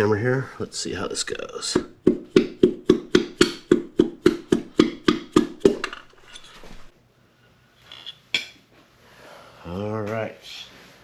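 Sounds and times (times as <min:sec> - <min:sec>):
hammer knocking on metal: 0:01.7 - 0:06.1.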